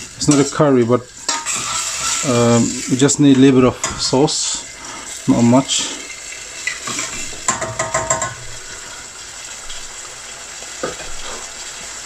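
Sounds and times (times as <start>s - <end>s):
chicken sizzling in a pot: 0.0s - 12.0s
utensil scraping pan: 1.3s - 2.3s.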